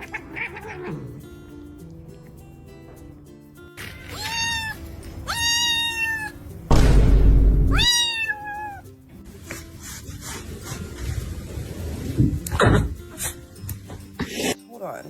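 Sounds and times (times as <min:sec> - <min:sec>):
cat meowing: 0:00.0 - 0:01.0, 0:03.9 - 0:06.5, 0:07.7 - 0:08.9
loud deep noise burst: 0:06.7 - 0:07.9.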